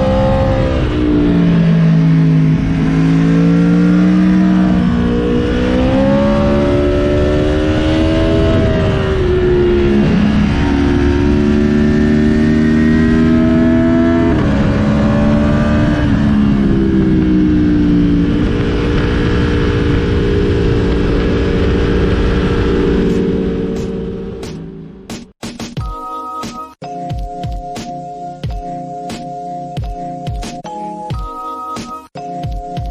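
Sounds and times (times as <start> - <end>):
wind rush on microphone: 0.0 - 3.2, 4.2 - 24.2
motorcycle engine revving: 0.0 - 25.4.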